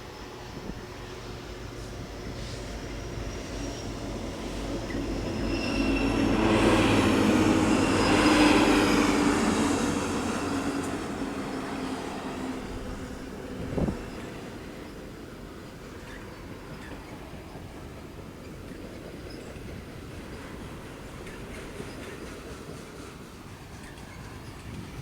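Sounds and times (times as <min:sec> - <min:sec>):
train wheels rumbling on rails: 0:00.0 - 0:25.0
high wheel squeal: 0:03.0 - 0:15.1.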